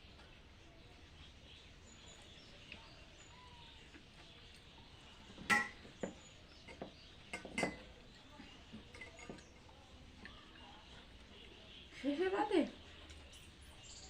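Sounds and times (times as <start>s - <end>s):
clicks and knocks of hands and plates: 5.3s - 10.4s.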